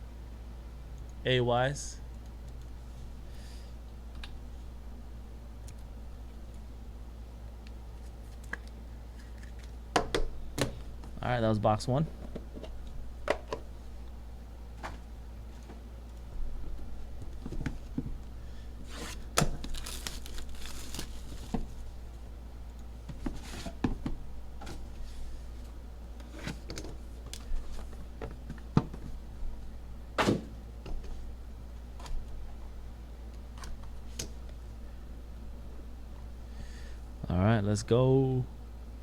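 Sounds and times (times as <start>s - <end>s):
steady low hum: 0.0s - 39.0s
wrapping crinkling and tearing: 19.5s - 21.5s.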